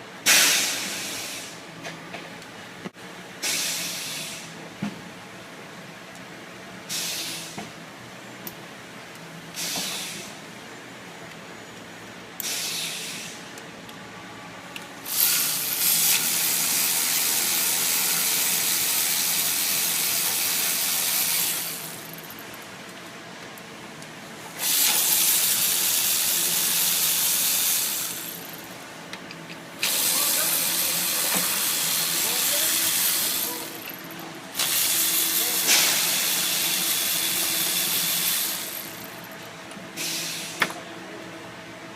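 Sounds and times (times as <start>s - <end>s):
hissing spray from nozzle: 29.8s - 33.8s, 34.6s - 38.8s.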